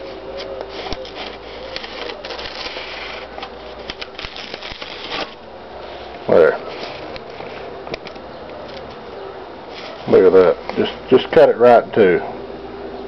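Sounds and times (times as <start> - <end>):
paper rustling and crackling: 0.0 - 9.0, 9.7 - 11.0.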